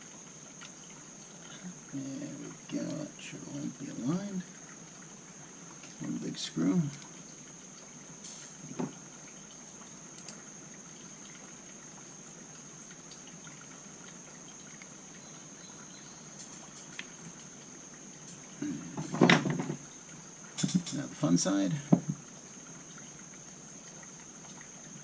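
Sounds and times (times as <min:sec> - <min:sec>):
steady hiss: 0:00.0 - 0:25.0.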